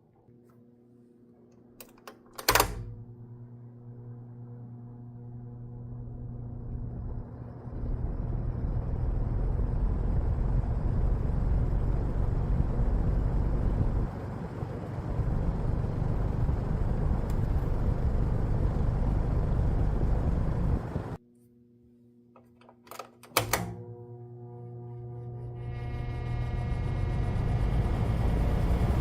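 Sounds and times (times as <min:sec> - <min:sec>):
faint motor hum: 0:00.0 - 0:29.0
box fan rushing air: 0:02.9 - 0:21.2, 0:25.6 - 0:29.0.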